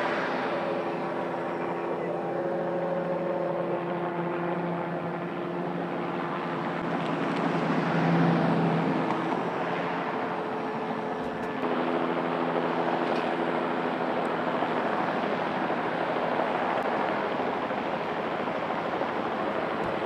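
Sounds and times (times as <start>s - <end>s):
helicopter turbine and rotor: 0.0s - 20.0s.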